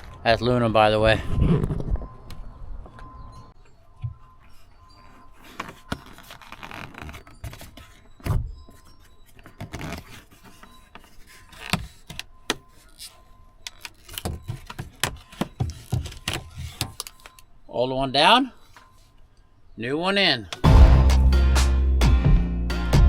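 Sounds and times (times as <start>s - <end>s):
clicks and knocks of plastic: 13.6s - 17.4s.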